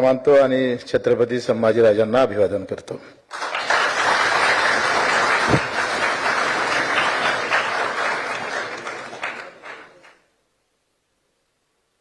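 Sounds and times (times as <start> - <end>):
people applauding: 3.3 - 10.3.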